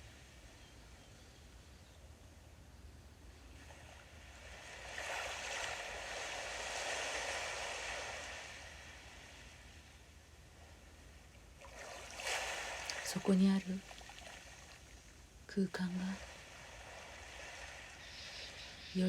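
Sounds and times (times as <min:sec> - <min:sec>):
sea waves washing onto shore: 0:03.6 - 0:15.2, 0:15.8 - 0:19.0.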